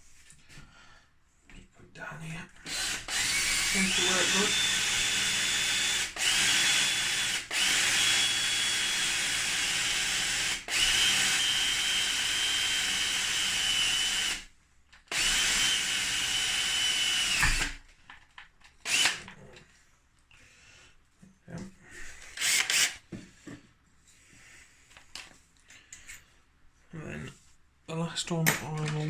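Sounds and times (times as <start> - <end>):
electric drill boring wood: 2.6 - 14.5, 15.1 - 17.8, 18.8 - 19.3, 22.3 - 23.0.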